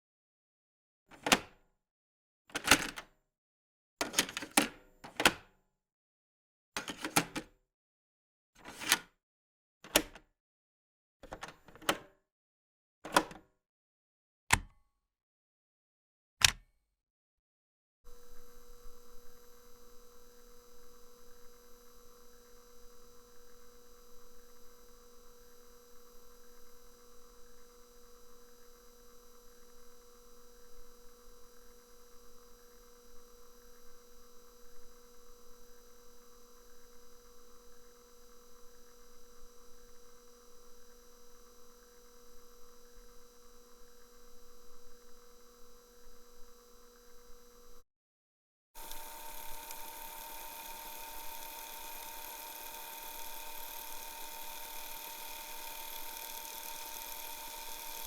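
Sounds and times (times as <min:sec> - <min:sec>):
cassette tape hiss and hum: 0:48.8 - 0:58.0.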